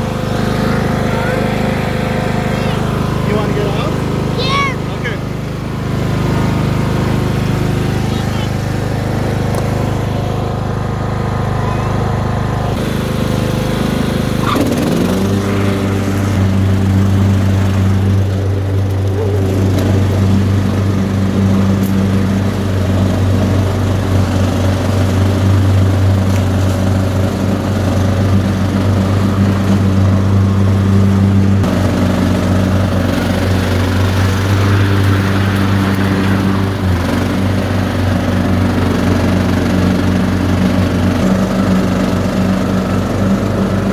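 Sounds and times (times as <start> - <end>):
riding lawn mower engine: 0.0 - 43.9.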